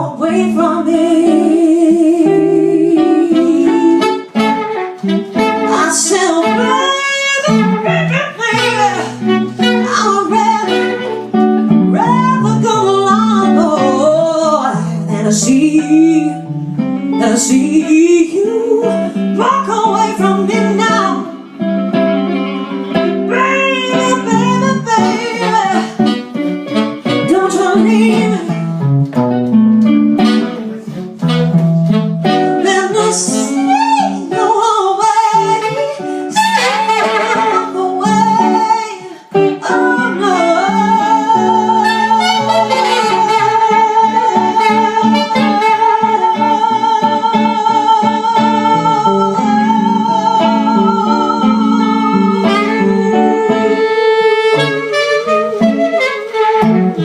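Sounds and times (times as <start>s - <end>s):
guitar accompaniment: 0.0s - 57.0s
slow soul-blues ballad: 0.2s - 34.5s
long held vibrato note: 3.0s - 11.9s.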